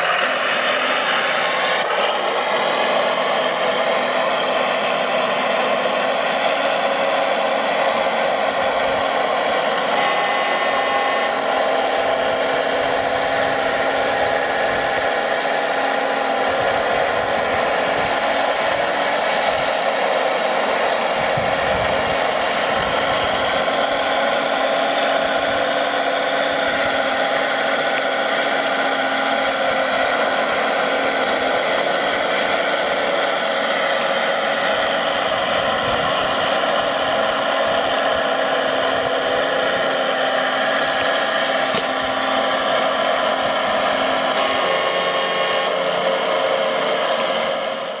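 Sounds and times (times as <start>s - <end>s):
small electric motors whining: 0.0s - 48.0s.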